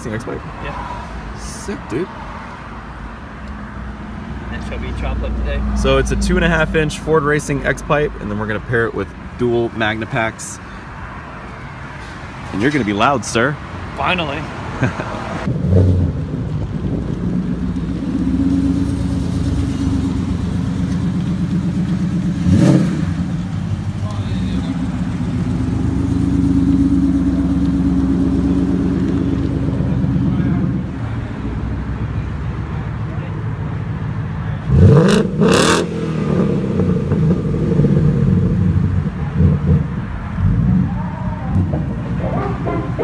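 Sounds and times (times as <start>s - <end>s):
loud exhaust blasts: 15.4s - 32.2s, 34.5s - 43.0s
car engine idling: 15.5s - 34.7s.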